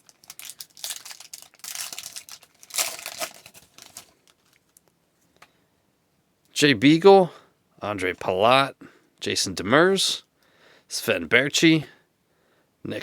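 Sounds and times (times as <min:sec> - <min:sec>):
foil wrapper crinkling and tearing: 0:00.0 - 0:04.9.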